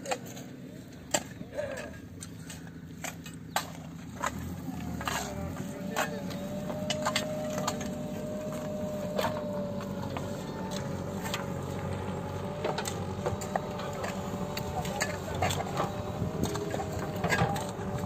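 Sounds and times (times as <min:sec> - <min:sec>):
sharp clicks and knocks: 0:02.2 - 0:18.0
machine humming with whine: 0:04.2 - 0:18.0.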